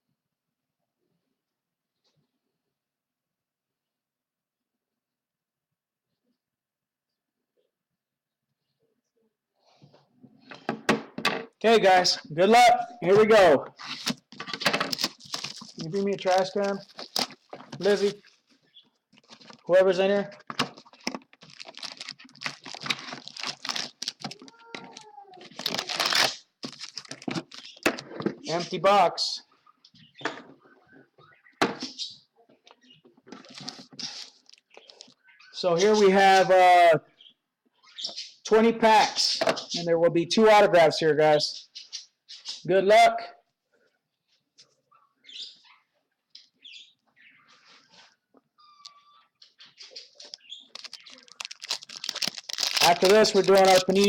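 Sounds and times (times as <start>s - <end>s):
plastic wrapping crinkling and tearing: 13.8s - 18.5s, 19.1s - 27.8s, 33.4s - 35.2s, 50.0s - 54.0s
foil packs rustling and tapping: 13.9s - 18.5s, 19.1s - 28.1s, 33.3s - 35.2s, 50.1s - 54.0s.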